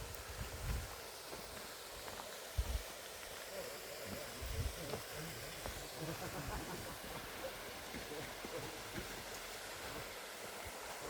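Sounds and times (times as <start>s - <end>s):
wind thumps on microphone: 0.0s - 1.0s, 2.6s - 2.8s
waterfall rushing over rocks: 0.0s - 11.0s.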